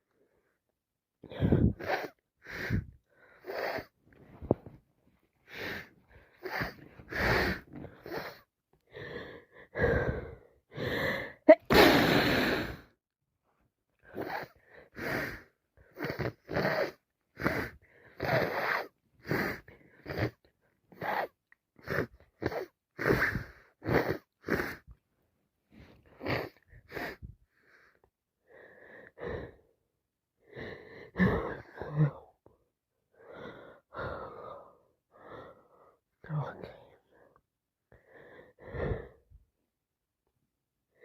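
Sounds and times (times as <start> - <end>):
person sneezing: 11.5 - 12.6.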